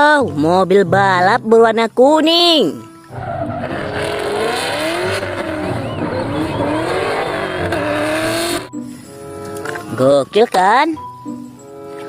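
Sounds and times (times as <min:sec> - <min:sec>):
race car engine revving: 0:03.1 - 0:08.7.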